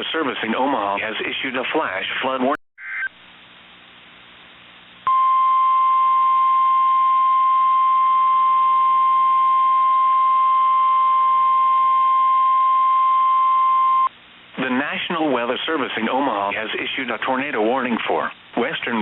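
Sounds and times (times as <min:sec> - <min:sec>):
faint radio hiss: 0:00.0 - 0:05.1, 0:14.1 - 0:19.0.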